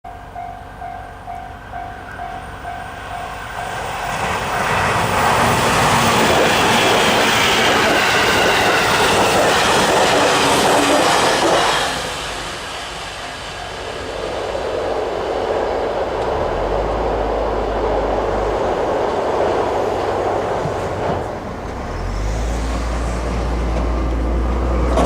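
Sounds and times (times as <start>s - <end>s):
level crossing warning bell: 0.1s - 4.5s
train passing at speed: 0.1s - 25.0s.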